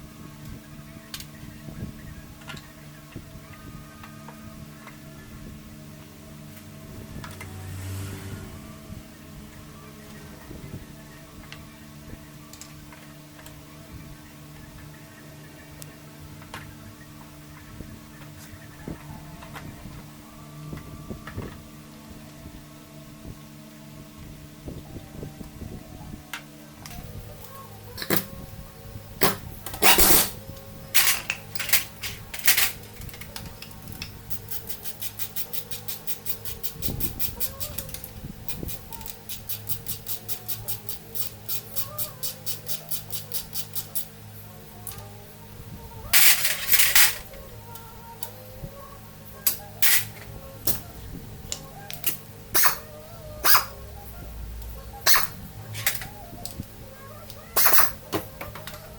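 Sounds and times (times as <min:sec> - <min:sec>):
metal clanks and knocks: 0:29.2 - 0:33.4.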